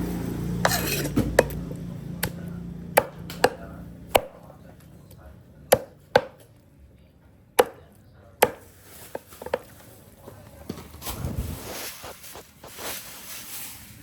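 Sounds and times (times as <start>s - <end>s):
knife chopping on cutting board: 0.6s - 2.4s, 3.0s - 4.4s, 5.7s - 6.5s, 7.6s - 9.6s.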